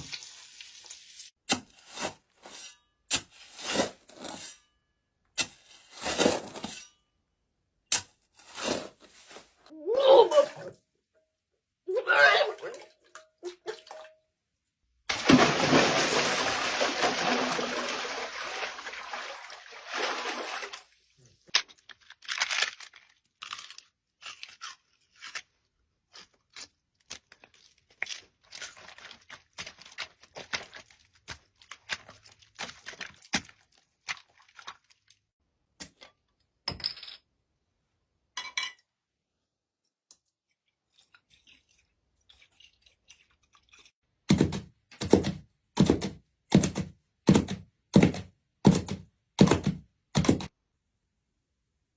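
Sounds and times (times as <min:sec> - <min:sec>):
small crunches clicks and rustles: 0:21.5 - 0:25.5.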